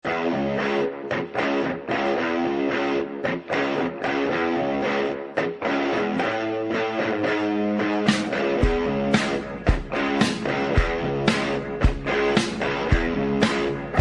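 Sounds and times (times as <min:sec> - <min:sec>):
strummed guitar chords: 0:00.0 - 0:14.0
drum hits: 0:08.1 - 0:13.8.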